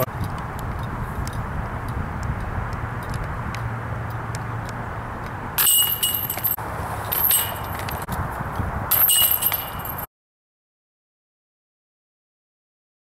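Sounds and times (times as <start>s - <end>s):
outdoor background noise: 0.0s - 10.1s
metal chains jangling: 5.6s - 8.1s, 8.9s - 10.1s.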